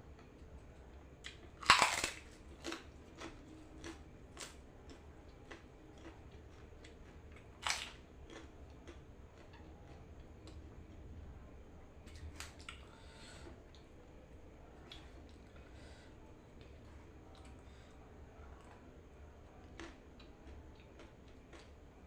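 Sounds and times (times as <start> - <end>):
food crunch: 1.2 - 9.5.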